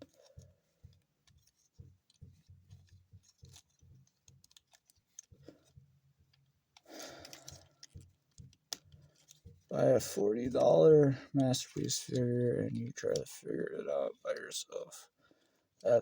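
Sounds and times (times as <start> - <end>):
plastic toy parts clicking: 0.0 - 9.7.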